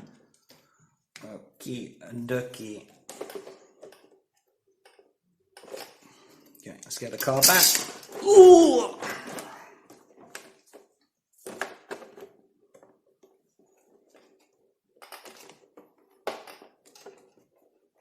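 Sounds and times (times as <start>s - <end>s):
parts clicking and knocking: 2.6s - 6.0s, 6.8s - 8.2s, 9.9s - 18.0s.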